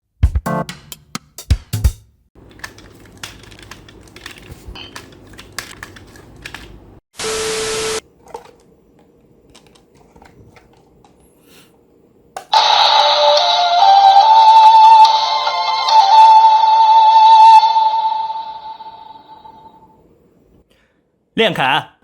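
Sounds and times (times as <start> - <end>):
loud electronic music: 12.6 - 19.2.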